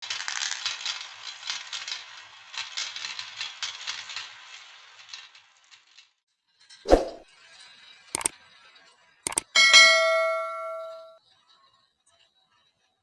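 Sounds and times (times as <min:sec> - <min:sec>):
marbles rattling along a track: 0:00.1 - 0:06.1.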